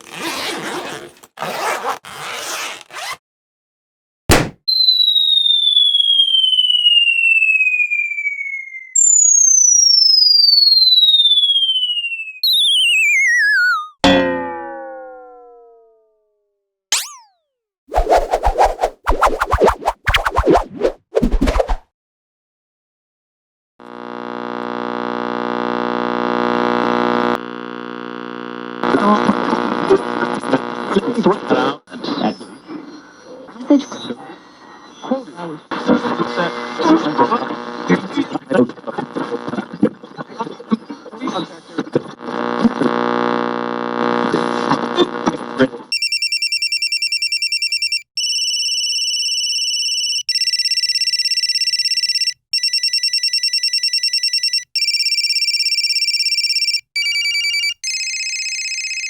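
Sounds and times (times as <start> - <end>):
rasping zipper-like bursts: 0.0 - 3.2
sharp bang: 4.3 - 4.6
whistle tone gliding down: 4.7 - 14.0
electronic tone with overtones: 11.9 - 15.9.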